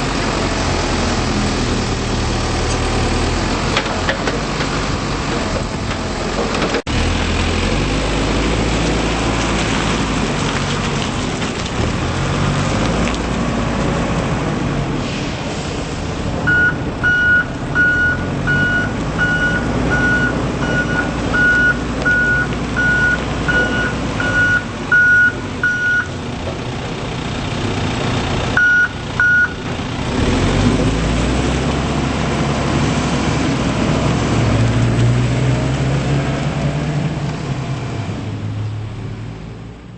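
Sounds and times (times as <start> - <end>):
diesel engine running: 0.0 - 39.9
reverse alarm beeping: 16.5 - 26.1, 28.6 - 29.6.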